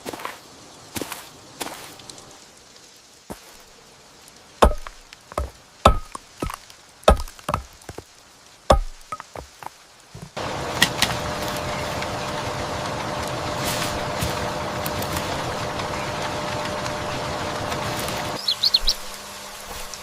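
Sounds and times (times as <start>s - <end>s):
chopping knocks: 4.6s - 8.0s, 8.7s - 9.6s
steady rushing noise with hum: 10.2s - 20.0s.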